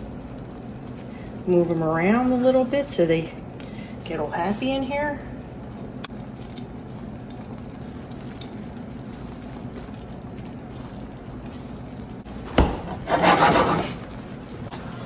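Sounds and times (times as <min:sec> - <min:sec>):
sauce simmering in a skillet: 0:00.0 - 0:12.4
stove hum: 0:00.0 - 0:15.0
scraping in a pan: 0:12.9 - 0:15.0.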